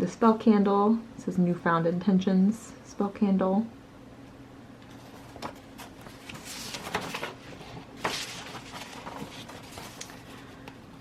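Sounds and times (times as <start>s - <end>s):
items rustling and scraping: 4.8s - 11.0s.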